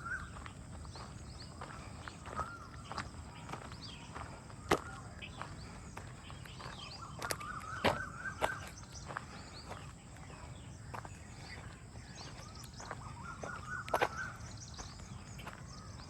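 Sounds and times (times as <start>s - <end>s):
birds chirping: 0.0s - 16.0s
footsteps on path: 0.0s - 16.0s
long bird call: 0.0s - 16.0s.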